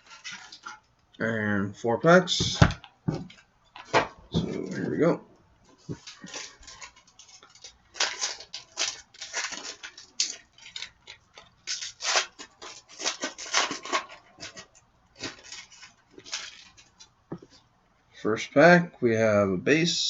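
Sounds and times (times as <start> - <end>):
card pack wrapper tearing and crinkling: 5.9 - 17.1.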